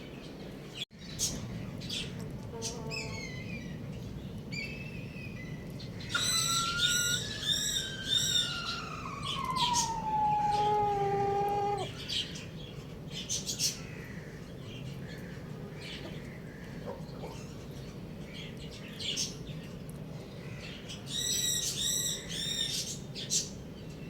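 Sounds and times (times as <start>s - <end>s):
rooster crowing: 6.2s - 12.0s.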